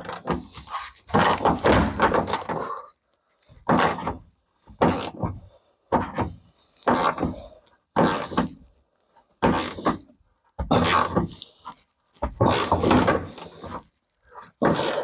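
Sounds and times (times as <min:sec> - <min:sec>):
knocking: 0:00.0 - 0:02.7, 0:12.2 - 0:13.8.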